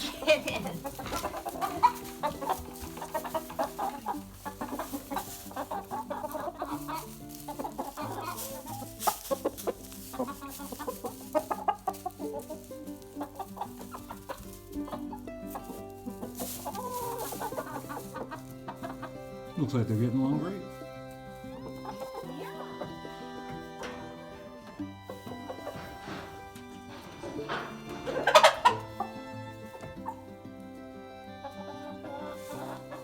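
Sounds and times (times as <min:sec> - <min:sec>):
background music: 0:00.0 - 0:33.0
chickens clucking: 0:00.0 - 0:33.0.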